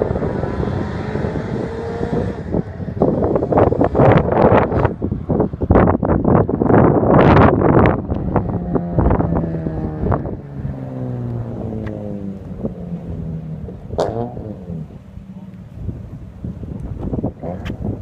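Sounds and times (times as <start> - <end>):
car engine revving down: 0.0 - 5.1, 7.2 - 16.0.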